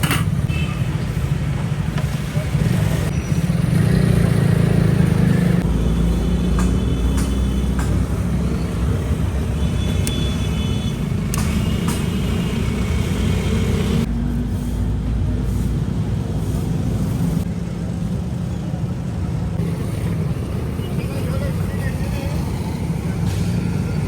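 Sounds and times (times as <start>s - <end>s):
engine rumbling: 0.0s - 24.0s
sharp clicks: 11.2s - 12.1s.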